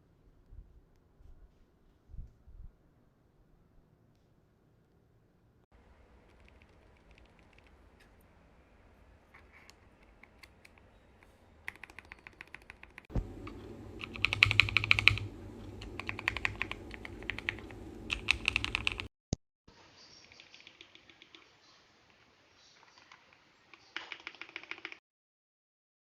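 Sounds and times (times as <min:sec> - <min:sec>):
typing on mechanical keyboard: 0:06.3 - 0:07.8, 0:11.6 - 0:19.1, 0:20.4 - 0:21.4, 0:22.9 - 0:25.0.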